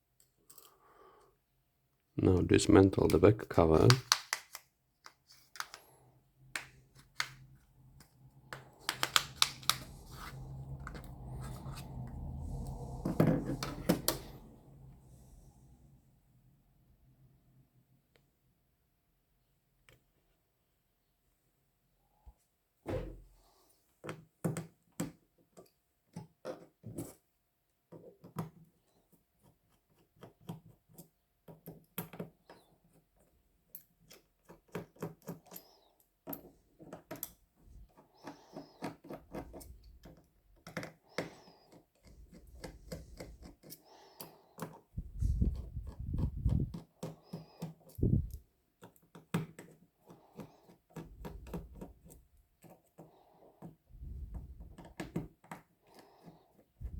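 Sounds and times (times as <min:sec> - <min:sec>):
plastic clicks and scrapes of tools: 0:03.8 - 0:05.9, 0:06.6 - 0:11.9.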